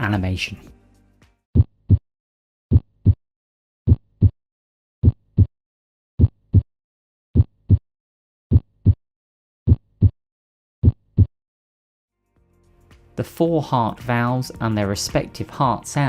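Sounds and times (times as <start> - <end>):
heartbeat thumps: 1.6 - 2.0, 2.7 - 3.2, 3.9 - 4.4, 5.0 - 5.5, 6.2 - 6.7, 7.4 - 7.8, 8.5 - 9.0, 9.7 - 10.2, 10.8 - 11.3.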